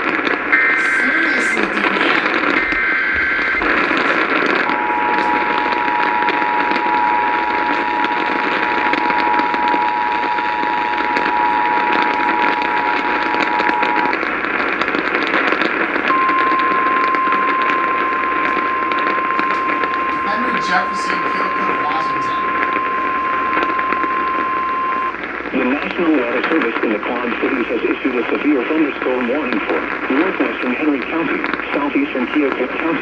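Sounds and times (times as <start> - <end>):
radio static: 0.0 - 33.0
two-tone attention signal: 0.6 - 14.2, 16.1 - 25.2
data header bursts: 0.6 - 15.2, 16.1 - 25.8.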